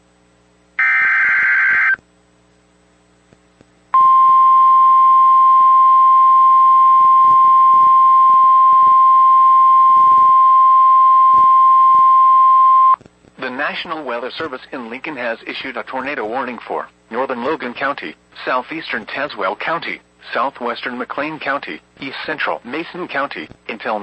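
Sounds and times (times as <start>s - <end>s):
screechy digital data burst: 0.8s - 2.0s
steady warning alarm tone: 0.8s - 2.0s.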